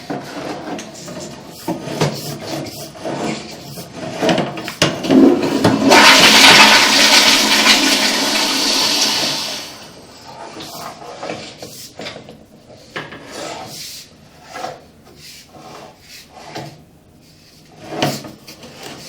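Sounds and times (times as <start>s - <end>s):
toilet flushing: 5.0s - 11.0s.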